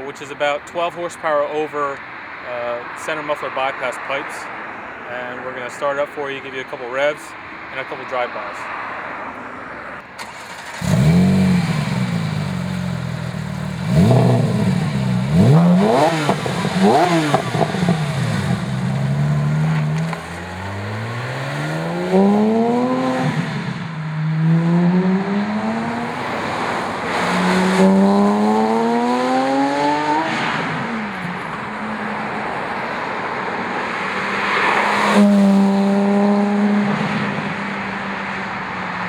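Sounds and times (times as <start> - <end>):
sports car accelerating past: 10.4 - 39.0.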